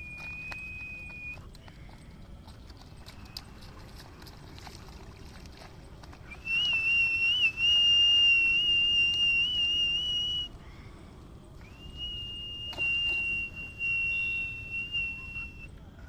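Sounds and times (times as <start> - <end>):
high whistle: 0.0 - 1.4, 6.3 - 10.5, 11.6 - 15.7.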